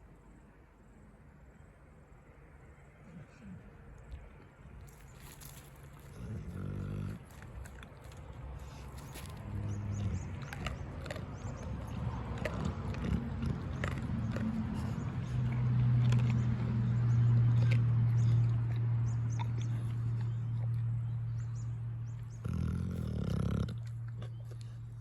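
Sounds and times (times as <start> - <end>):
dog low drawn-out vocalising: 3.0 - 25.0
dog eating clicks: 7.0 - 21.0.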